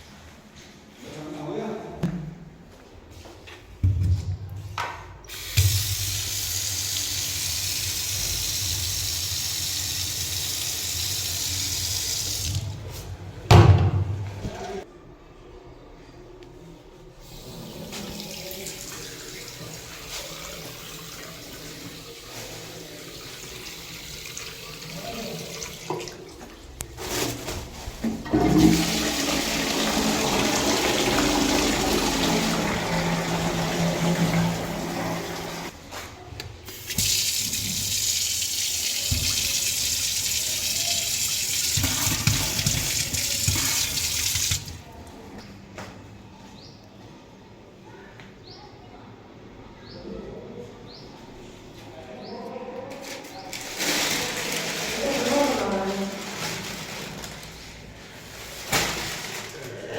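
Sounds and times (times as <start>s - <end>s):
toilet flushing: 5.3s - 13.0s, 17.2s - 27.4s, 28.0s - 35.8s, 36.7s - 44.9s, 53.7s - 57.4s.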